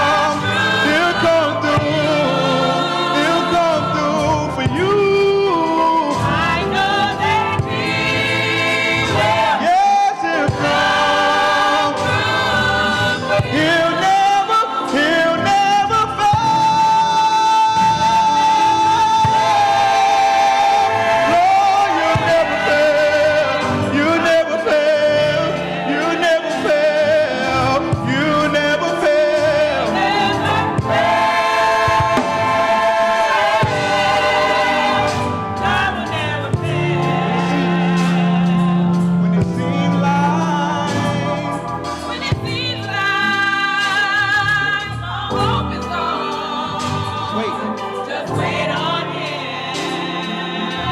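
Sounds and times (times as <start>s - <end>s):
gospel choir singing: 0.0s - 50.9s.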